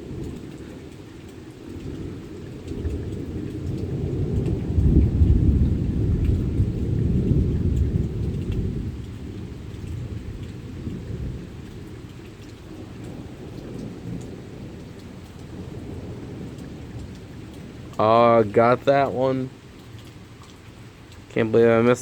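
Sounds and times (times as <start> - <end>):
rain pattering: 0.0 - 22.0
rolling thunder: 1.7 - 19.1.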